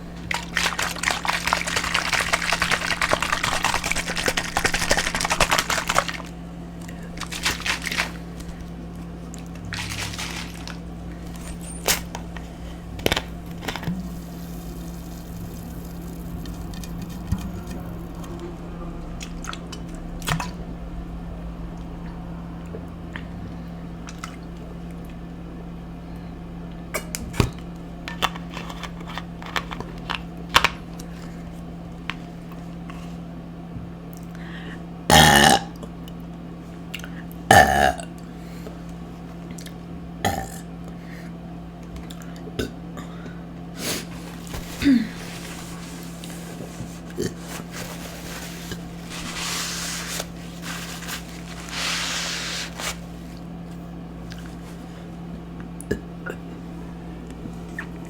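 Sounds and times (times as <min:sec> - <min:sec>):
steady low hum: 0:00.0 - 0:58.0
dense crackle: 0:09.4 - 0:21.1.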